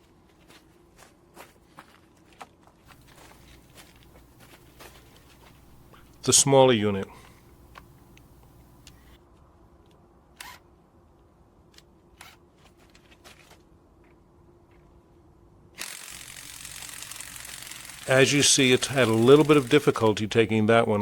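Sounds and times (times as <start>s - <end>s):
steady hiss: 3.0s - 9.2s, 15.9s - 20.6s.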